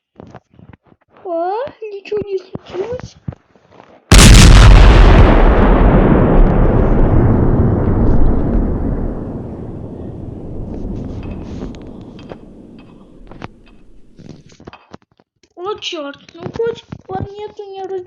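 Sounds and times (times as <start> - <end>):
explosion blast with rumble: 4.1 - 14.5.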